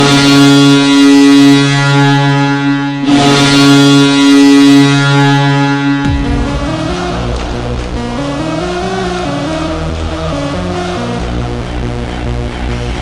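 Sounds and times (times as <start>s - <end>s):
arena goal horn blasts: 0.0s - 10.0s
goal song music: 0.0s - 12.5s.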